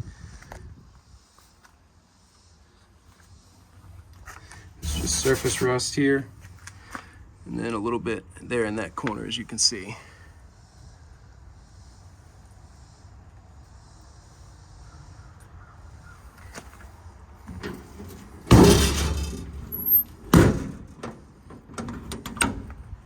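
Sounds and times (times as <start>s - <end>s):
metal door bang: 4.8s - 5.7s, 17.5s - 22.7s
metal door scraping clatter: 4.8s - 6.0s, 17.4s - 22.7s.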